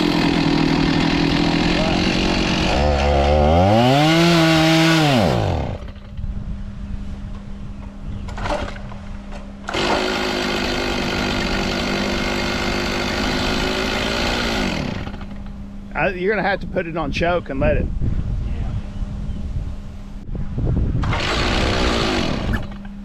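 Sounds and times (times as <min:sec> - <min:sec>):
chainsaw engine revving: 0:00.0 - 0:06.1, 0:09.6 - 0:15.5, 0:21.0 - 0:22.9.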